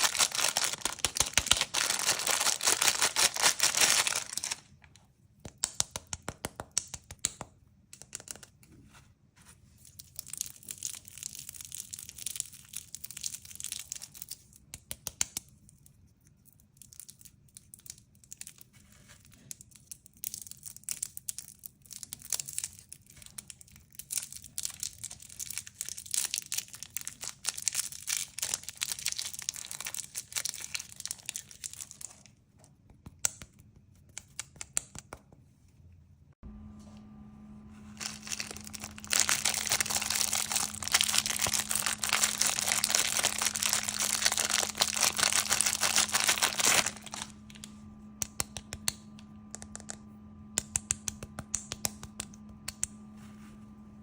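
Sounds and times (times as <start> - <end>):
candy packaging crinkling: 0.0 - 4.8, 9.8 - 14.6, 15.5 - 32.5, 37.9 - 47.7.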